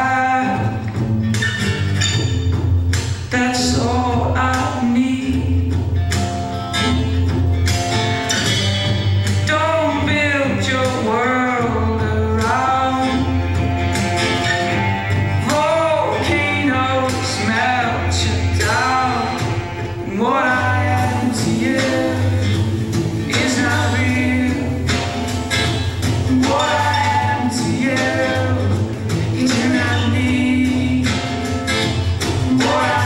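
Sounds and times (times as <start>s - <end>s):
man singing: 0.0s - 1.0s, 3.3s - 5.8s, 9.4s - 13.7s, 15.4s - 25.3s, 25.9s - 31.6s, 32.4s - 33.0s
bass: 0.0s - 33.0s
guitar: 0.0s - 33.0s
percussion: 0.0s - 33.0s.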